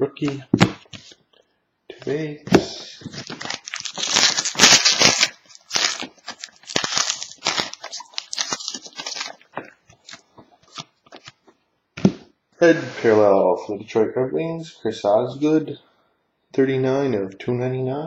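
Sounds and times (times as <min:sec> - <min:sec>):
cards being handled: 0:02.5 - 0:11.4
foil wrapper crinkling and tearing: 0:03.1 - 0:11.4.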